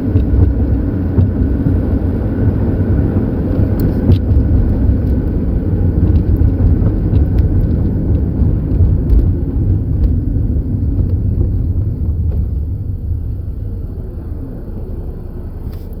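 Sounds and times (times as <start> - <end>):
pickup truck engine and road rumble: 0.0 - 16.0.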